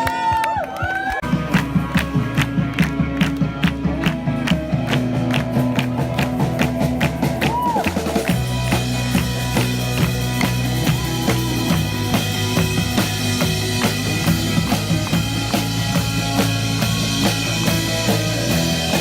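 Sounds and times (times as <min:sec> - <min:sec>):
drum kit beat: 0:01.2 - 0:19.0
held instrumental chords: 0:08.0 - 0:19.0.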